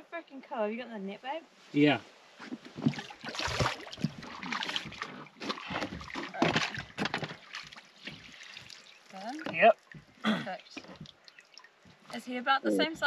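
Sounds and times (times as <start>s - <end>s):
water splashing: 1.8s - 13.0s.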